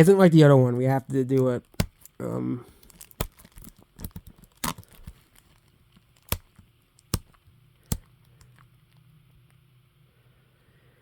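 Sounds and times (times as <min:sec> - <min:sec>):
plastic cd case clicking: 0:02.8 - 0:08.6.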